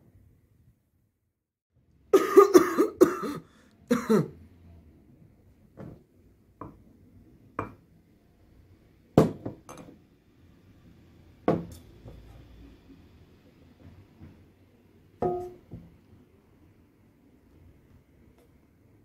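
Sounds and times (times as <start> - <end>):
glass and dishes clinking: 15.2 - 15.6.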